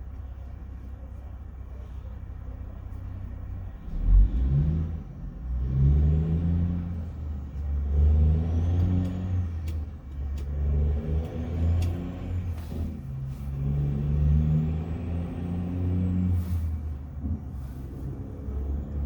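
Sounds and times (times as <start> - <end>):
car engine and road rumble: 0.0 - 19.0.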